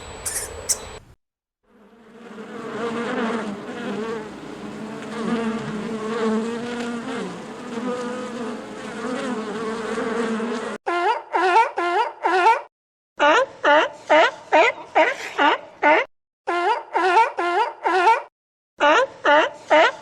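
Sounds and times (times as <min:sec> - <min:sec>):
flying insect buzzing: 0:01.7 - 0:10.8.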